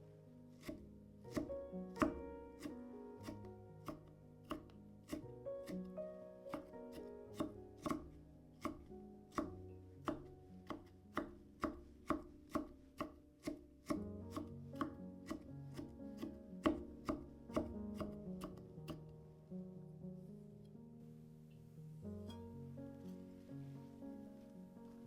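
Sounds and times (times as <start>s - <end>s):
knife chopping on cutting board: 0.6s - 5.8s, 6.5s - 19.0s.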